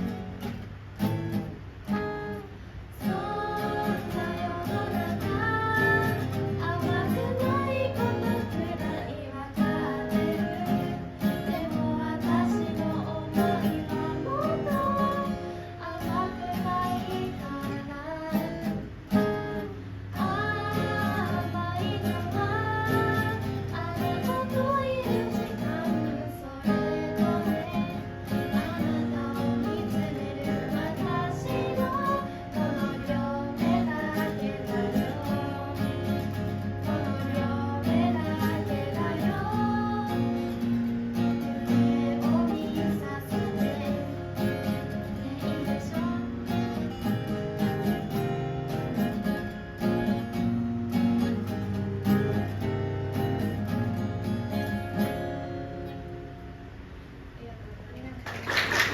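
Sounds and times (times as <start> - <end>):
acoustic guitar strumming: 0.0 - 57.2
person singing: 3.0 - 18.7, 20.1 - 40.7, 41.5 - 46.7.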